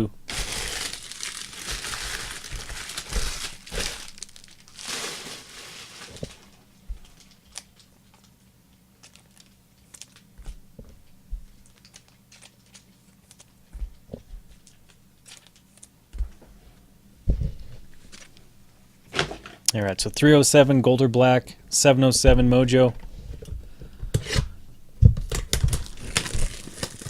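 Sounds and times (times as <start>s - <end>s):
wrapper crinkling and tearing: 0.0s - 8.4s, 9.0s - 10.3s, 11.5s - 13.6s, 14.6s - 15.9s, 25.3s - 27.0s.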